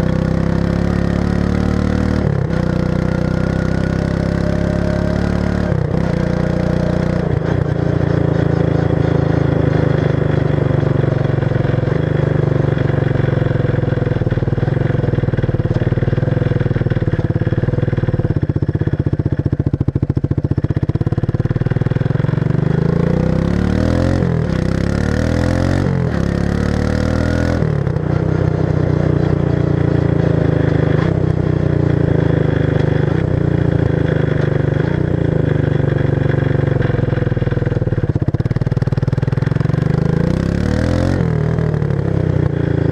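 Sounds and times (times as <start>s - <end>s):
engine revving and idling: 0.0s - 42.9s.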